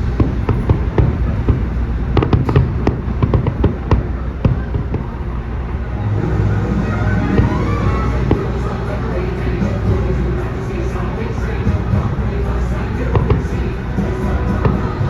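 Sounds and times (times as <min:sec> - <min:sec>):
fireworks bursting and crackling: 0:00.0 - 0:05.8
steady low rumble: 0:00.0 - 0:15.0.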